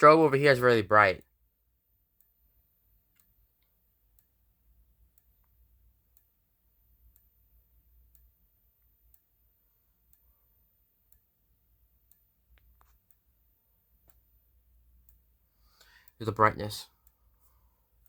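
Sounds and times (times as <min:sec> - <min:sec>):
faint strobe clicks: 0:01.2 - 0:18.0
small clicks: 0:03.1 - 0:04.4, 0:14.0 - 0:14.4.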